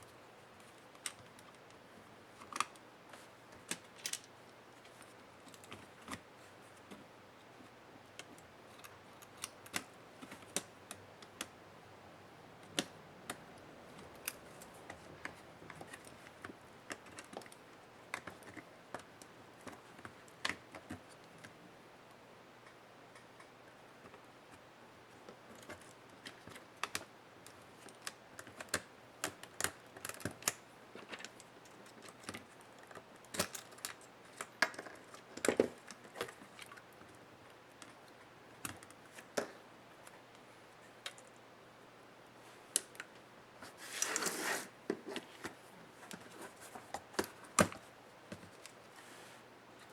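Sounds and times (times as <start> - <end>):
small clicks and taps of parts: 0.6 - 1.8, 2.4 - 11.6, 12.6 - 21.6, 25.2 - 41.4.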